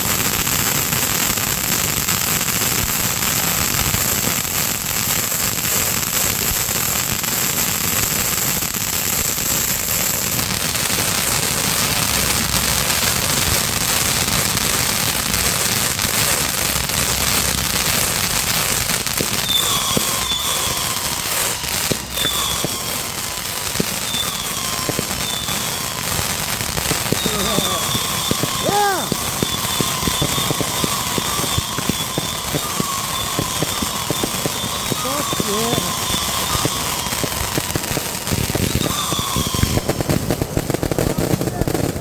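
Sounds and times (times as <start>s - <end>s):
falling firework whistles: 0.0s - 42.0s
fireworks crackling and popping: 0.0s - 42.0s.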